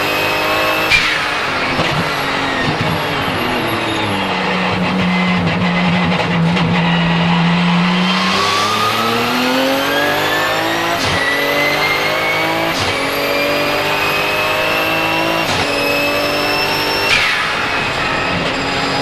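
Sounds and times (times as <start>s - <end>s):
race car engine at full throttle: 0.0s - 19.0s
turbo whistle: 8.1s - 12.7s, 15.5s - 19.0s.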